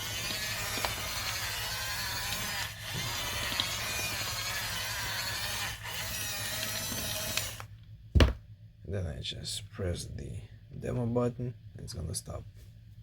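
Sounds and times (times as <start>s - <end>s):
toy bulldozer motors whirring: 0.0s - 7.7s.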